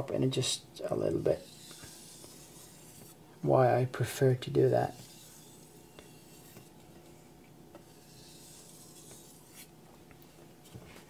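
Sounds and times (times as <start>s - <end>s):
knife scraping on whetstone: 1.2s - 3.2s, 4.8s - 9.7s.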